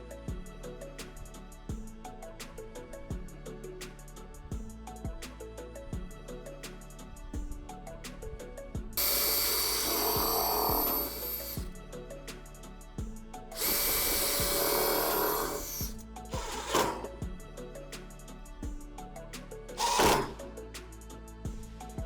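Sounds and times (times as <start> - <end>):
background music with steady beat: 0.0 - 22.0
electric power tool cutting: 9.0 - 11.7, 13.6 - 17.2, 19.8 - 20.4.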